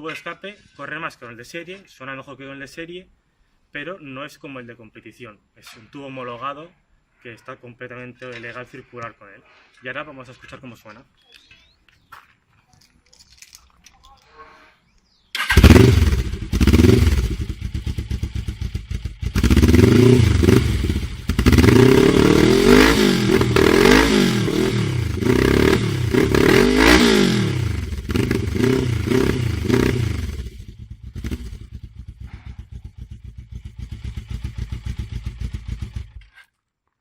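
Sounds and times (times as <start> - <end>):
motorcycle engine revving and idling: 15.4 - 36.3.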